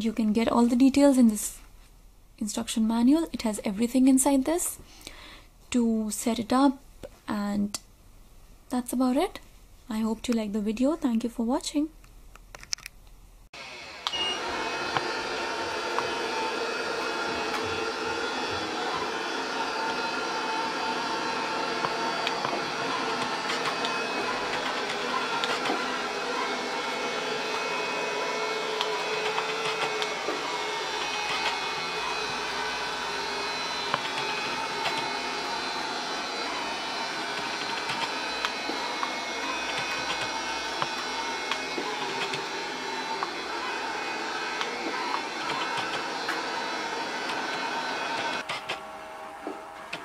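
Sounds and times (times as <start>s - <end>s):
robot vacuum whirring: 13.6s - 50.0s.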